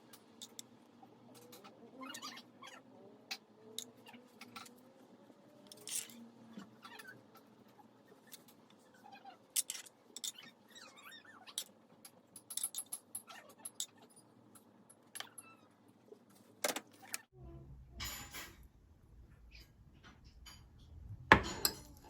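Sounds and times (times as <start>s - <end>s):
utensils and dishes clinking: 5.6s - 6.3s, 9.6s - 10.5s, 17.9s - 18.7s, 20.0s - 22.0s.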